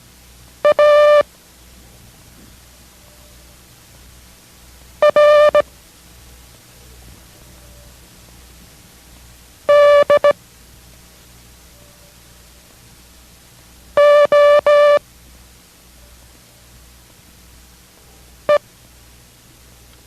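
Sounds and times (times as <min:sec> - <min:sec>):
faint low hum: 0:00.0 - 0:20.0
morse code tones: 0:00.6 - 0:01.2, 0:05.0 - 0:05.6, 0:09.7 - 0:10.4, 0:14.0 - 0:15.0.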